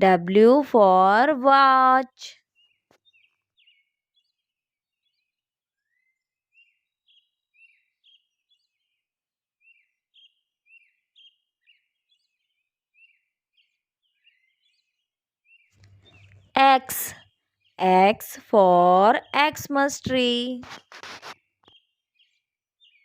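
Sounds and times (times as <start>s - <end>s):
faint bird chirping: 15.5s - 17.4s.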